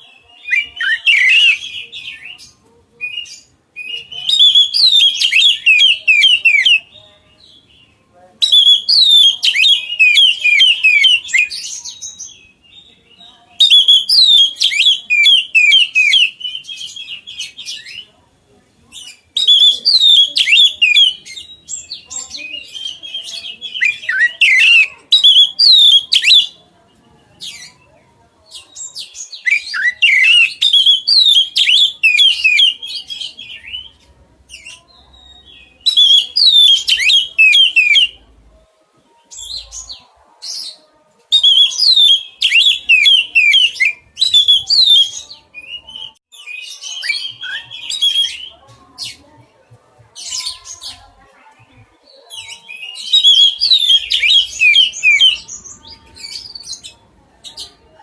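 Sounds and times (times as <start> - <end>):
bird singing whistles and chirps: 0.0 - 7.0, 8.4 - 12.9, 13.6 - 18.1, 19.1 - 26.6, 28.7 - 38.2, 40.6 - 48.6, 52.3 - 56.9.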